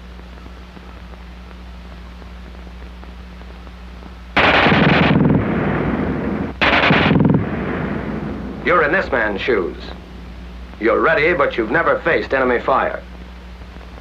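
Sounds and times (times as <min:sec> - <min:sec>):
film soundtrack hum and hiss: 0:00.0 - 0:14.0
automatic gunfire: 0:04.4 - 0:09.0.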